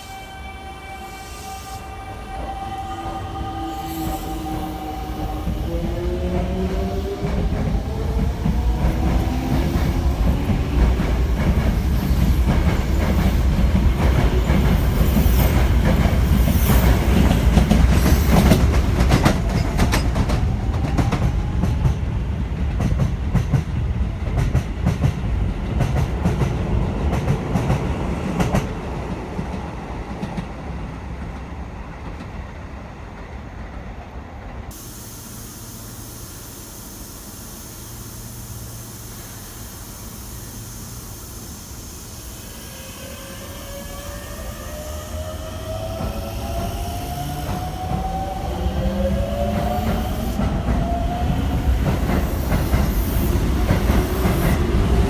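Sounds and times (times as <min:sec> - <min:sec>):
train wheels clacking over rail joints: 0:08.4 - 0:22.0
electric train motor whine: 0:34.7 - 0:55.0.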